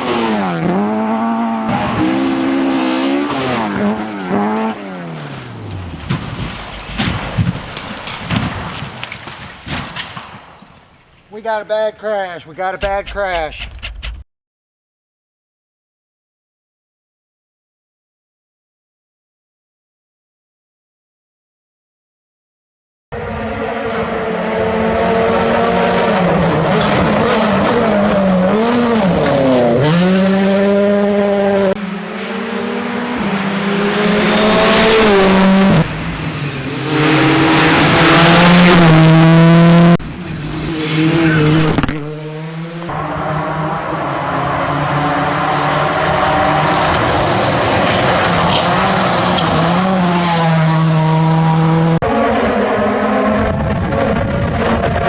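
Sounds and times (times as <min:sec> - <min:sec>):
rally car engines at full throttle: 0:00.0 - 0:09.4, 0:23.2 - 0:55.0.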